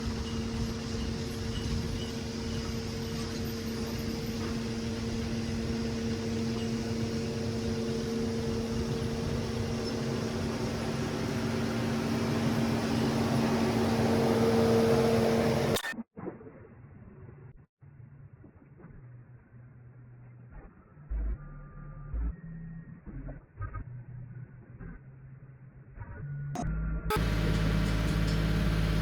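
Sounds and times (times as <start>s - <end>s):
motor humming: 0.0s - 15.8s, 27.1s - 29.0s.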